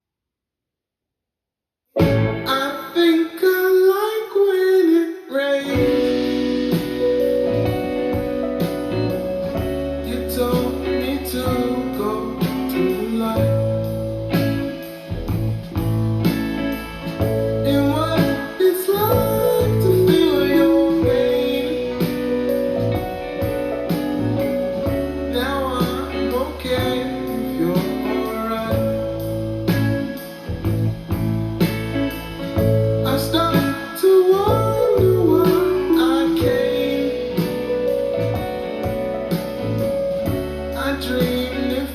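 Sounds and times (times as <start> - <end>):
deep bass line: 2.0 - 2.5, 5.8 - 33.8, 34.4 - 41.9
plucked guitar: 2.0 - 2.8, 5.7 - 41.9
person singing: 2.4 - 14.8, 17.2 - 23.6, 24.7 - 30.4, 32.6 - 39.0, 40.7 - 41.9
steady beat: 5.8 - 28.1, 28.7 - 33.8.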